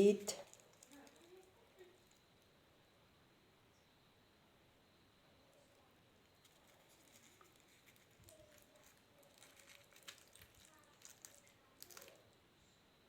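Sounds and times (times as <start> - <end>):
light crackles and clicks: 0.3 - 2.5, 5.6 - 12.4.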